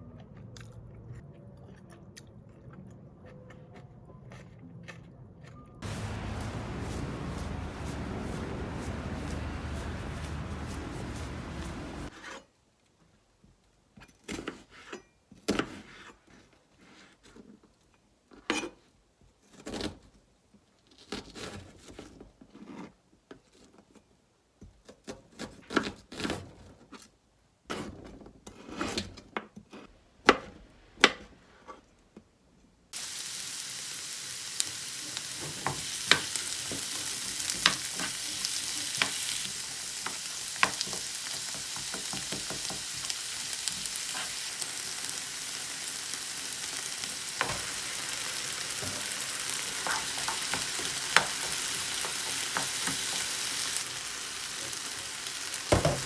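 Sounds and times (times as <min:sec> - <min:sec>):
food sizzling in frying pan: 0:05.8 - 0:12.1, 0:33.0 - 0:56.0
kitchen knocks and taps: 0:40.1 - 0:43.0, 0:55.7 - 0:56.0.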